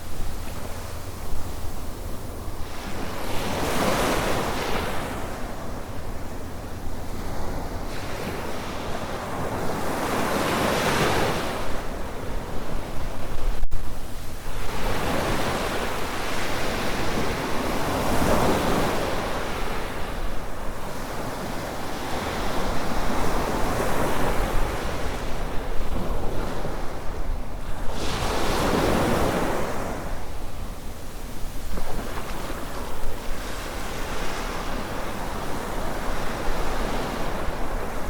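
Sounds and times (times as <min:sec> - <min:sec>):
waves breaking on a sandy beach: 0:00.0 - 0:38.0
wind rumble on microphone: 0:00.0 - 0:38.0.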